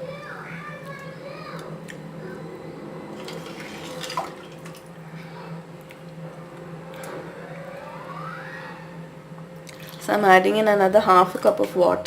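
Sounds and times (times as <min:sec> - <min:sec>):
low hum: 0:00.0 - 0:12.0
water pouring into a cup: 0:03.2 - 0:04.9.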